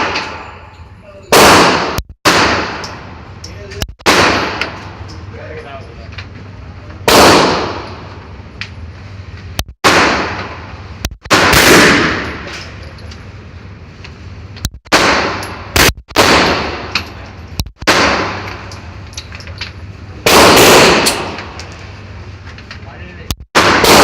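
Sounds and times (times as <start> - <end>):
pistol shots with echo: 1.3 - 3.0, 4.0 - 4.8, 7.1 - 8.0, 9.8 - 10.6, 11.3 - 12.5, 14.9 - 17.0, 17.8 - 18.7, 20.2 - 21.6, 23.6 - 24.0.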